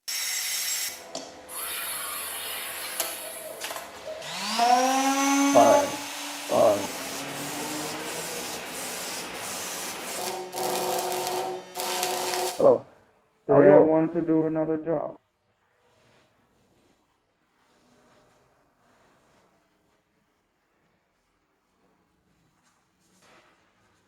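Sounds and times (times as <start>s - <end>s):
circular saw cutting: 0.0s - 12.8s.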